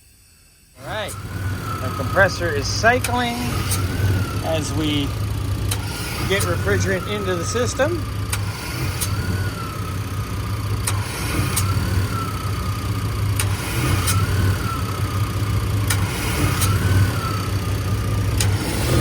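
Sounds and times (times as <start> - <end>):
pickup engine idling: 0.8 - 19.0
compressor clutch clicks: 1.9 - 19.0.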